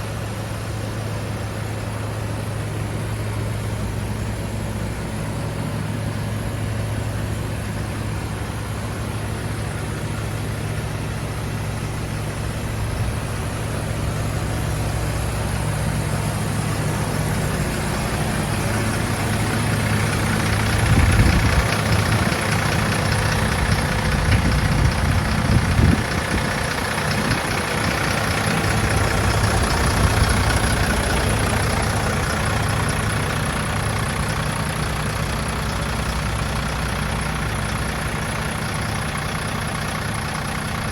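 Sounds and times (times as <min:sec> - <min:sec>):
diesel truck engine idling: 0:00.0 - 0:40.9.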